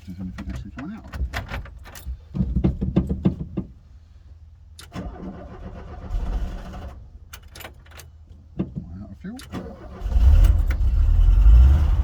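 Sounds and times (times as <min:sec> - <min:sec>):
van engine cranking: 0:04.8 - 0:08.2, 0:09.4 - 0:12.0.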